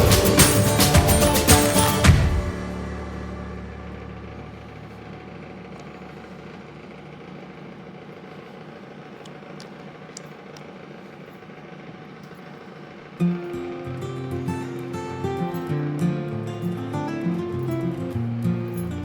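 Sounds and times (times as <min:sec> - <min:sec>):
low rumbling hum: 0:00.0 - 0:09.3.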